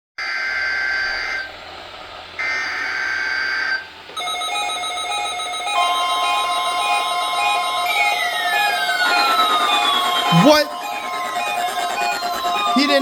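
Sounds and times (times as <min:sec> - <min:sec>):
screeching digital data bursts: 0:02.4 - 0:13.0
electronic alert beeps: 0:04.4 - 0:13.0.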